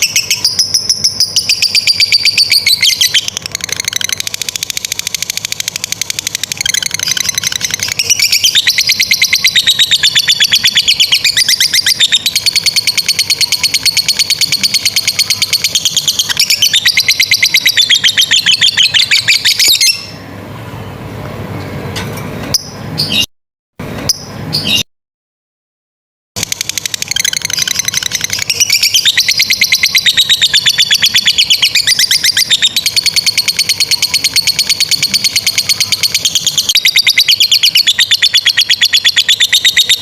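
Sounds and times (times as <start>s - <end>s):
lovebird chattering trill: 0.0s - 20.1s, 26.4s - 40.0s.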